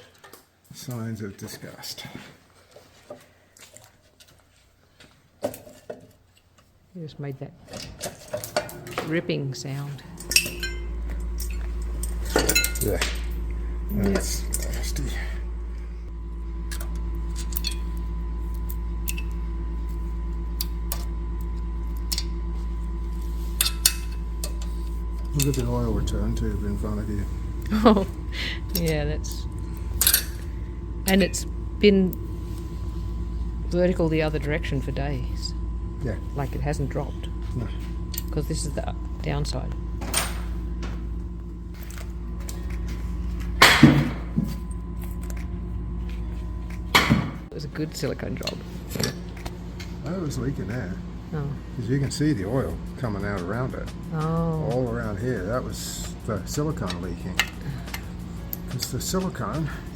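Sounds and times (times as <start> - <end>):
steady low hum: 5.0 - 59.9
engine parts clattering: 7.6 - 50.9.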